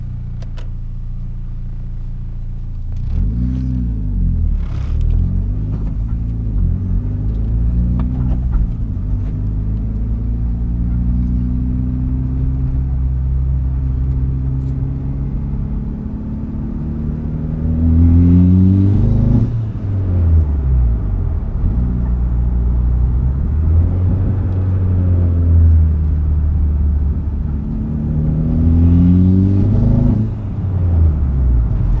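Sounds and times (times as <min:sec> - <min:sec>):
turbocharged car engine revving: 0:02.9 - 0:20.3, 0:26.4 - 0:32.0.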